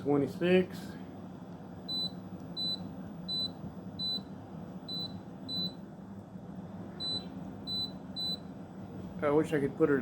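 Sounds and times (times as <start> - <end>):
steady low hum: 0.0 - 10.0
air conditioner beeps: 1.8 - 6.2, 6.9 - 10.0.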